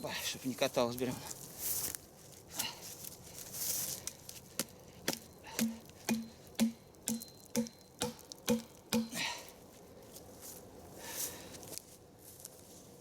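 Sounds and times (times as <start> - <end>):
wooden wedges knocked in: 5.1 - 9.2.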